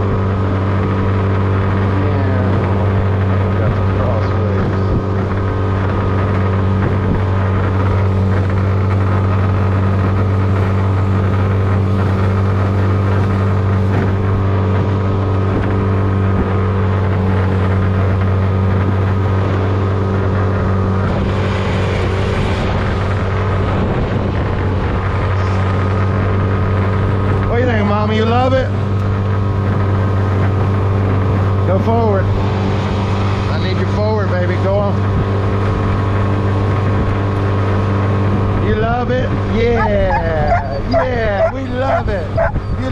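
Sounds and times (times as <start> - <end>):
outboard motor drone: 0.0 - 42.9
water and wind noise: 0.0 - 42.9.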